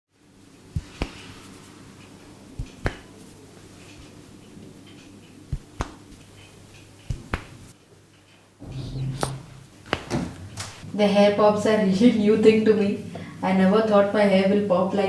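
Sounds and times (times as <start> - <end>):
hair cracking pops: 7.0 - 7.7.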